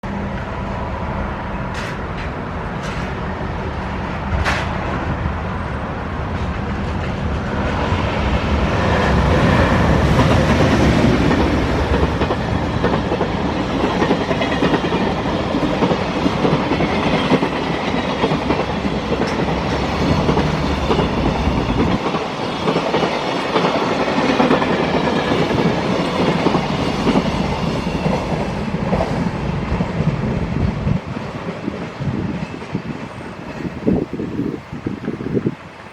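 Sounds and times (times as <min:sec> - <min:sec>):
freight train passing: 0:00.0 - 0:35.9
wheels clickety-clack over rail joints: 0:01.5 - 0:05.2, 0:06.2 - 0:35.9.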